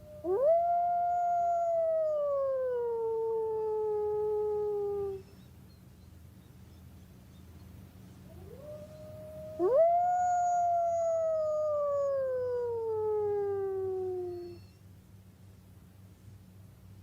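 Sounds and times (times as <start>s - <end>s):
wolf howling: 8.3s - 14.7s.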